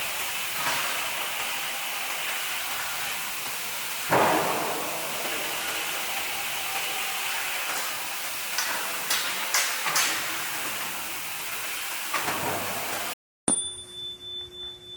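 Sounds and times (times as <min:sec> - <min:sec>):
short bright ding: 0:13.5 - 0:14.6.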